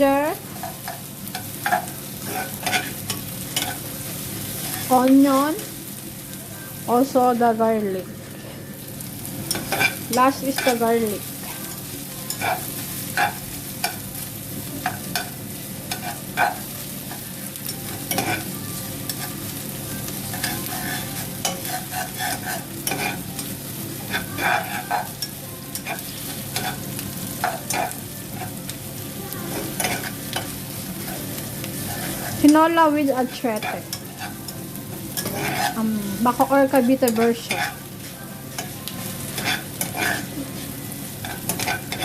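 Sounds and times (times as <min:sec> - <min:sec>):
food sizzling in hot oil: 0:00.0 - 0:42.0
utensil clicking and scraping pan: 0:20.3 - 0:23.2, 0:24.1 - 0:26.8, 0:35.2 - 0:35.8, 0:36.8 - 0:37.8, 0:39.3 - 0:40.3.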